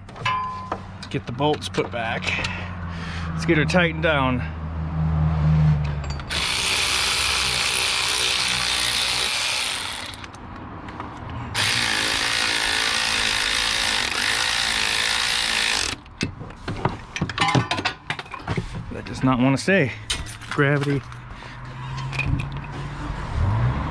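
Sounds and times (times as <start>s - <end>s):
ratchet wrench tightening bolts: 6.0s - 16.4s, 20.1s - 22.7s.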